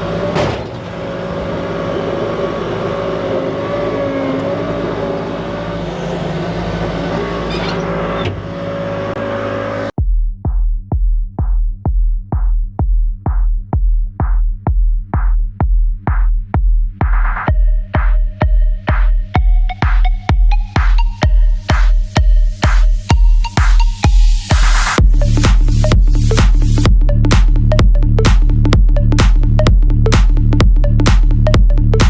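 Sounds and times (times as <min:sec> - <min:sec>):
engine running: 0:00.0 - 0:10.0, 0:18.9 - 0:32.0
steady kick drum: 0:10.0 - 0:32.0
electronic dance music: 0:12.4 - 0:32.0.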